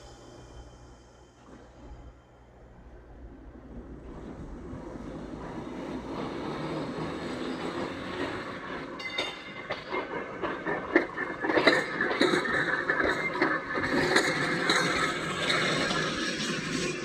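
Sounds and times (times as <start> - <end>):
train wheels clicking over rail joints: 4.0 - 17.0
high wheel squeal: 5.0 - 17.0.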